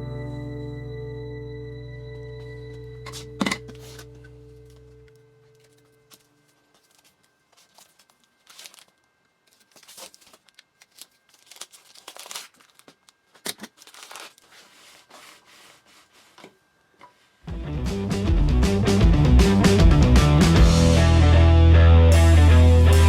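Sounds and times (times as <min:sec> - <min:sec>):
hands rustling and crinkling materials: 0:03.1 - 0:17.4.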